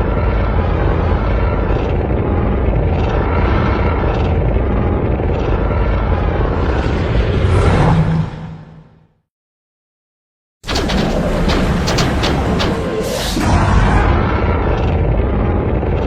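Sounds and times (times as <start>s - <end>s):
monster rumble with hiss: 11.8s - 16.0s.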